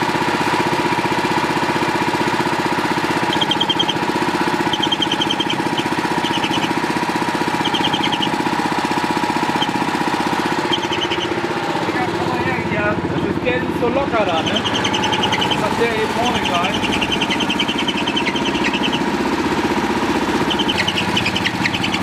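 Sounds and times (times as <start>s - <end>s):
engine running steadily: 0.0s - 22.0s
steady mechanical squeal: 0.0s - 22.0s
rapid high chirping: 2.6s - 12.6s, 14.2s - 22.0s.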